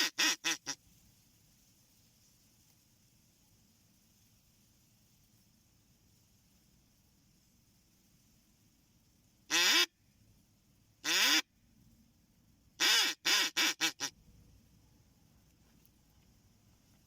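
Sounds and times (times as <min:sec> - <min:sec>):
duck quacking: 0:00.0 - 0:00.8, 0:09.5 - 0:09.9, 0:11.0 - 0:11.5, 0:12.8 - 0:14.1.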